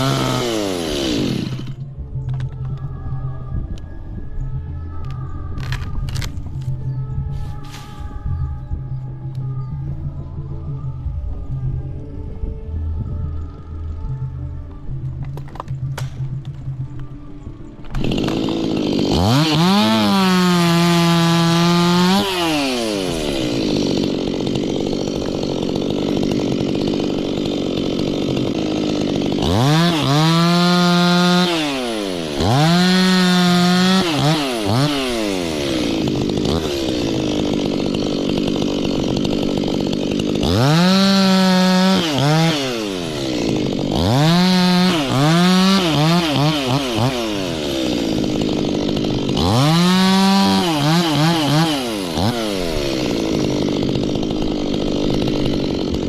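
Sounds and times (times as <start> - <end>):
chainsaw revving and idling: 0.0 - 2.6, 5.6 - 7.0, 17.8 - 56.0.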